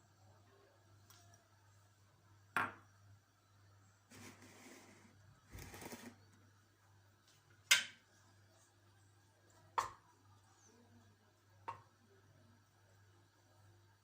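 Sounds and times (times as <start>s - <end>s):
rustling and scraping: 4.1s - 6.4s.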